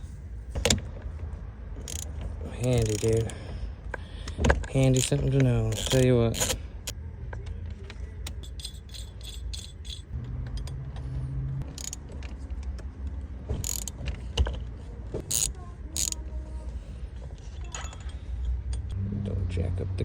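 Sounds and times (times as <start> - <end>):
keys and lock parts jingling: 1.8 - 3.5, 4.2 - 6.7, 7.8 - 11.0, 11.6 - 12.4, 15.3 - 16.2, 17.3 - 19.0.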